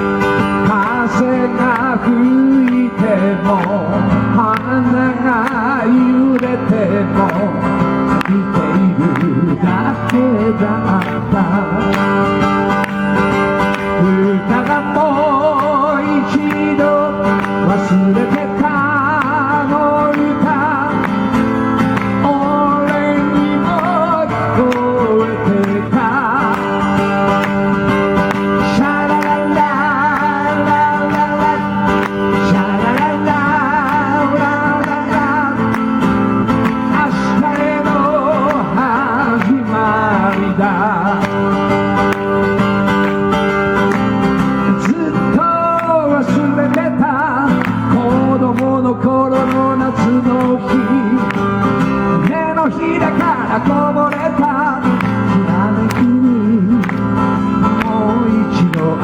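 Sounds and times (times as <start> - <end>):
man singing with vibrato: 0.0 - 59.0
strummed acoustic guitar: 0.0 - 59.0.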